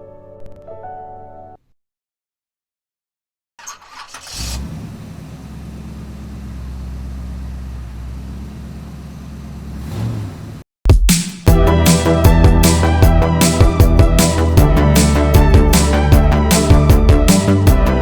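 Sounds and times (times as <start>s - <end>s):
car engine starting and idling: 3.6s - 10.6s
loud music with a beat: 10.9s - 18.0s.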